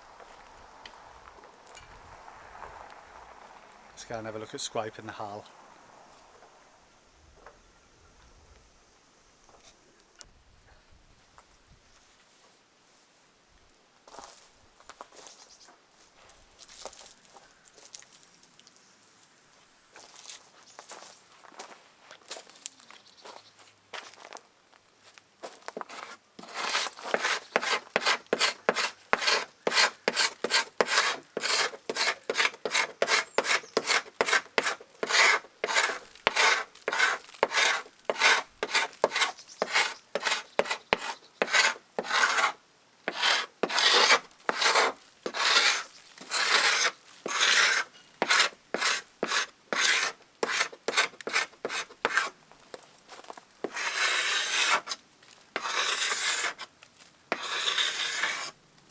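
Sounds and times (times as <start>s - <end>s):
paint scraper scraping wood: 25.8s - 52.4s, 53.6s - 55.0s, 55.6s - 56.7s, 57.3s - 58.6s.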